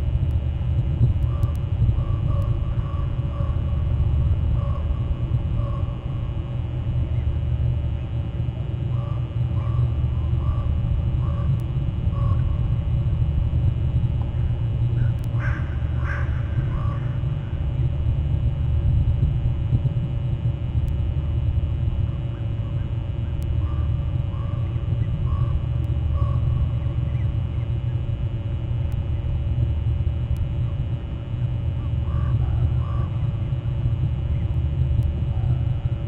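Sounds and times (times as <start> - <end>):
steady low rumble: 0.0 - 36.0
crows cawing: 15.0 - 17.2.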